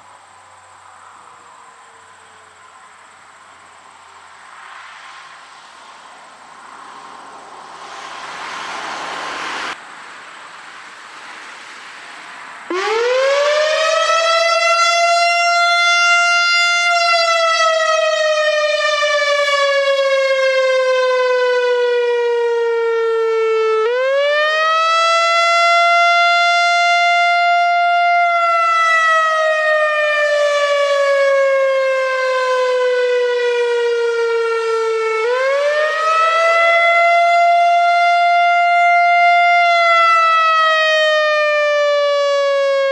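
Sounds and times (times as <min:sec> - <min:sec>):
hiss: 0:03.6 - 0:12.7
electronic siren wailing: 0:12.7 - 0:42.9.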